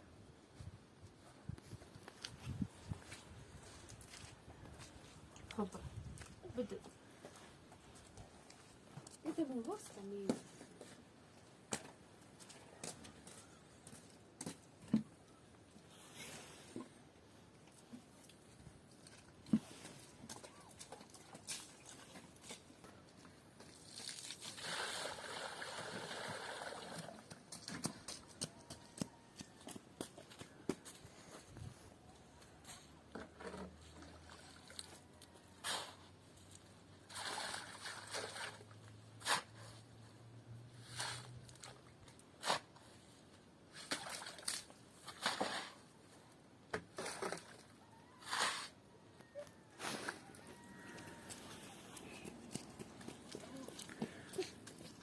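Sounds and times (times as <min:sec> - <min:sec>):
water pouring: 0:23.6 - 0:27.3
water sloshing and splashing: 0:37.0 - 0:38.9.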